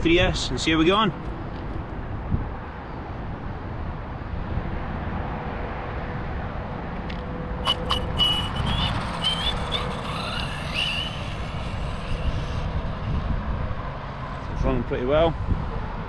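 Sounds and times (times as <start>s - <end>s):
electric motor whining: 7.7s - 13.2s.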